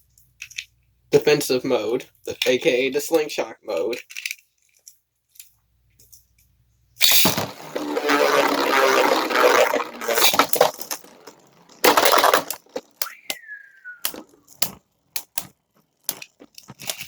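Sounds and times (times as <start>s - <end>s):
spinning tops grinding and clattering: 7.0s - 13.1s
sharp clicks of tops: 7.0s - 17.0s.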